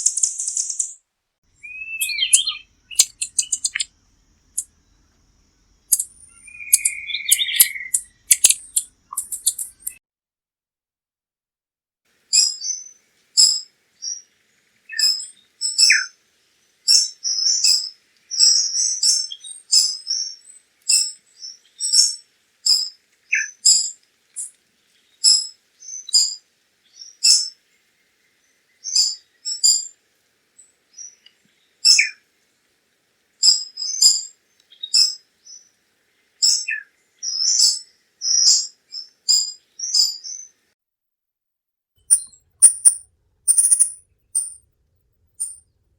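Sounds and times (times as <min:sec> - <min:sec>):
bird chips and twitters: 0:00.0 - 0:01.0, 0:01.6 - 0:05.0, 0:05.9 - 0:10.0, 0:36.4 - 0:40.5, 0:42.0 - 0:45.7.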